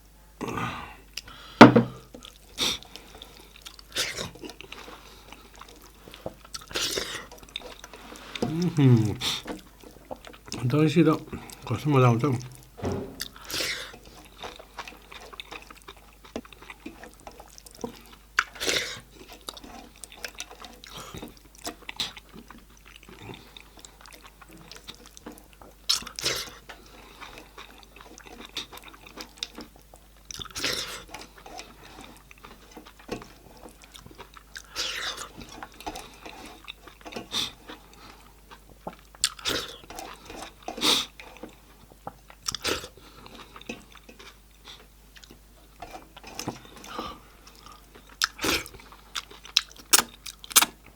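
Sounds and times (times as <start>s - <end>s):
wet chewing and mouth clicks: 2.1s - 10.6s, 12.5s - 50.8s
sharp biting or sucking: 49.9s - 50.7s.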